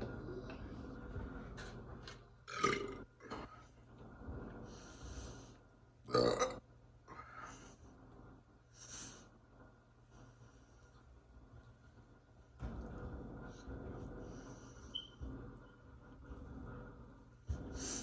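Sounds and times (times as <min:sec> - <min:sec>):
person burping: 0:02.5 - 0:03.5, 0:06.1 - 0:06.6.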